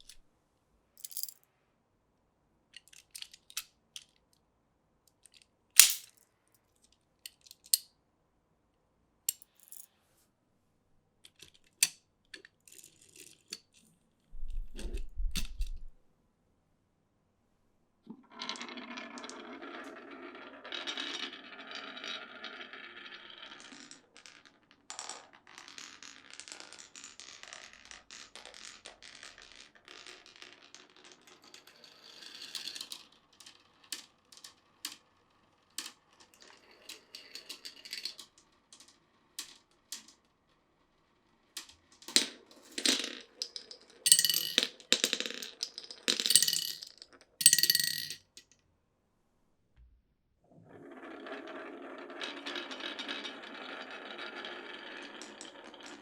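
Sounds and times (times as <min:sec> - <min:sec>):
marbles clicking on track pieces: 0:05.8 - 0:06.1, 0:41.6 - 0:48.4, 0:54.5 - 0:56.0
marbles rolling along track: 0:18.2 - 0:48.4, 0:50.9 - 0:56.0.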